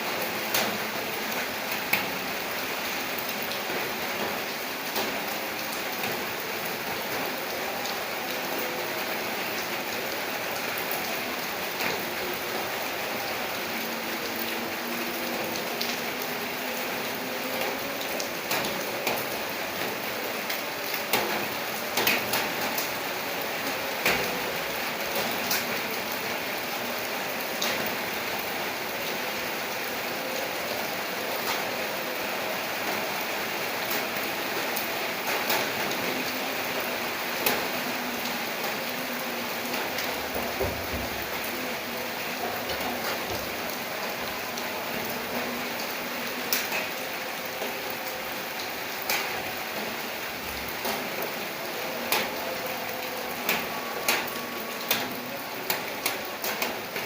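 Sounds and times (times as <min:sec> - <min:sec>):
raindrops hitting a surface: 0:00.0 - 0:57.0
steady rain hiss: 0:00.0 - 0:57.0.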